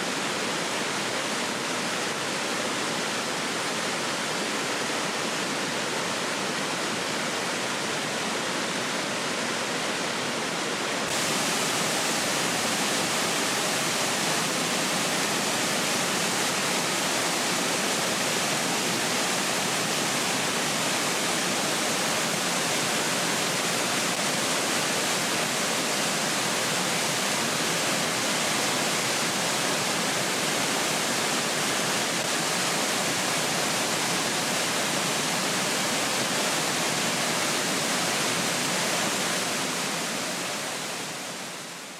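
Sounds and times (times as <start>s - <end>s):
waterfall rushing: 0.0s - 41.9s.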